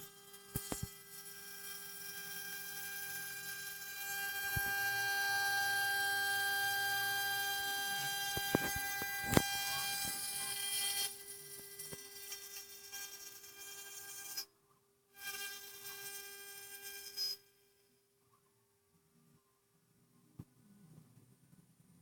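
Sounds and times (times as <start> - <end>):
router spindle whining: 0.0 - 11.2.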